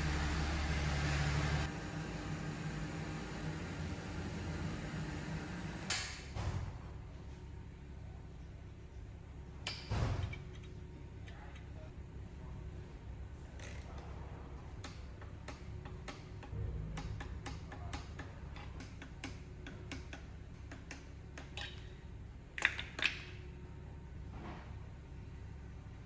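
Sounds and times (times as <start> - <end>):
low steady hum: 0.0 - 5.9.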